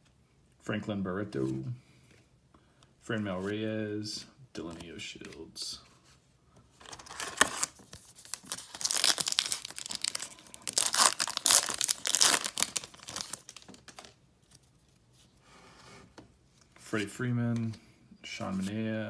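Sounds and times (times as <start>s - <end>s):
foil wrapper tearing and crinkling: 6.8s - 14.2s.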